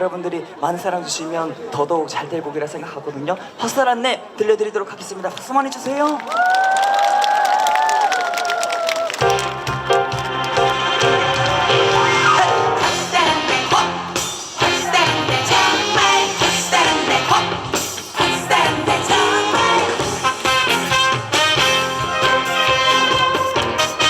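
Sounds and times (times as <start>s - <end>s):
upbeat instrumental backing track: 9.2s - 24.0s.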